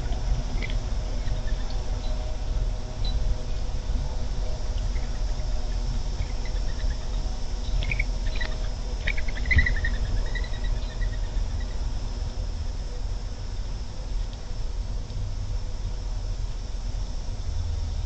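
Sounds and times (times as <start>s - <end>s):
low outdoor rumble: 0.0s - 18.0s
faint bird chirps: 6.2s - 11.8s.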